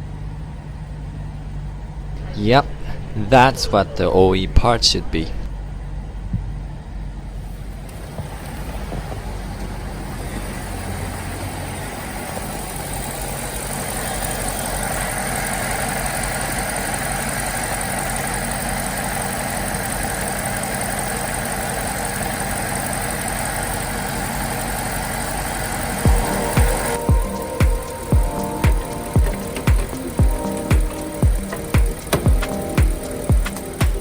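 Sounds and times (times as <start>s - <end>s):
car engine idling: 0.0s - 34.0s
deep music beats: 26.1s - 34.0s.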